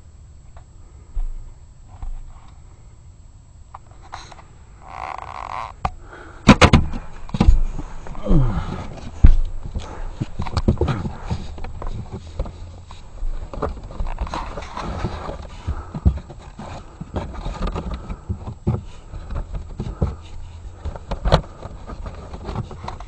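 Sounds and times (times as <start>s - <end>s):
knocks thumps and scuffing: 6.5s - 23.0s.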